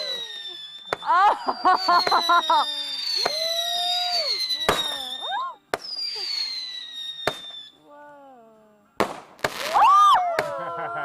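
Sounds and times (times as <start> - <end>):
firework bangs: 0.0 - 7.6, 9.0 - 10.6
firework whistles falling in pitch: 0.0 - 7.8.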